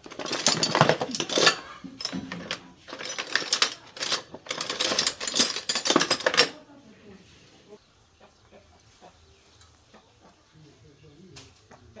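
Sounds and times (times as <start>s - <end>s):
metal objects clattering: 0.0s - 6.6s.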